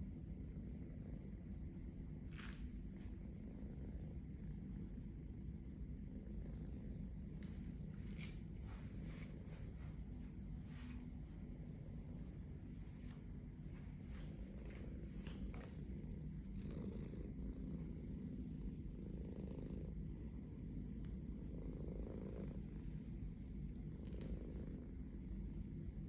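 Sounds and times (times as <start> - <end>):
cat purring: 3.1 - 10.7, 13.9 - 26.0.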